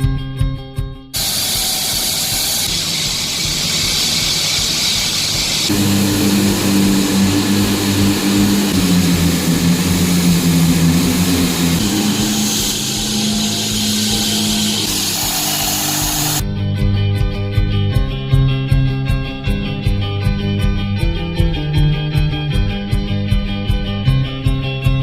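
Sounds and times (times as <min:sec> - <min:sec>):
concrete saw cutting: 0:01.2 - 0:16.4
low engine hum: 0:02.7 - 0:15.4.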